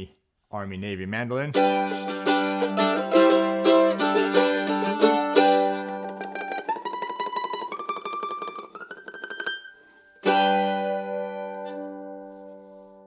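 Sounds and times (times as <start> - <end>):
mandolin tremolo picking: 1.5 - 13.0
strummed mandolin chord ringing: 1.6 - 13.0.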